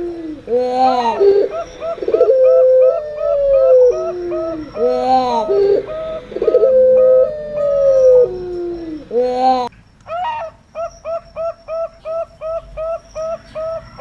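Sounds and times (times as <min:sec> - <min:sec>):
doves cooing: 0:00.0 - 0:14.0.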